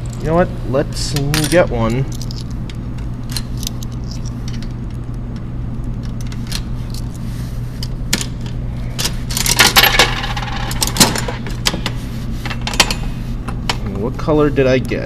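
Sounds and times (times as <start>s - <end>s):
low store hum: 0.0s - 15.0s
vending machine clicks and rattles: 8.1s - 12.0s.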